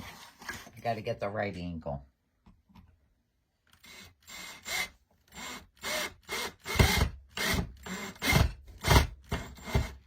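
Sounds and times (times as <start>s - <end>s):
screw grinding into wood: 3.7s - 10.0s.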